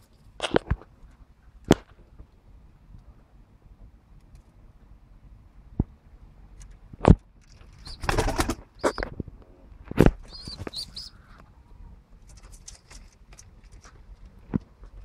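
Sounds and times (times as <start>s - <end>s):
pigeon wings flapping: 7.8s - 8.7s.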